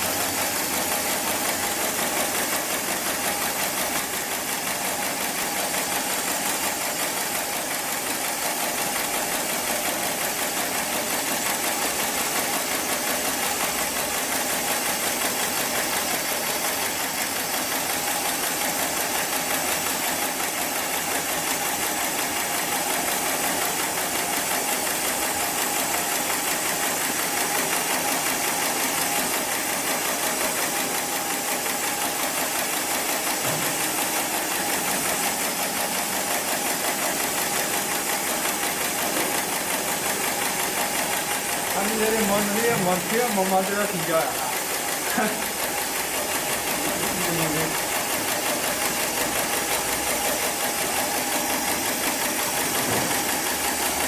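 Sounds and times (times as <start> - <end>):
sewing machine chattering: 0.0 - 54.0.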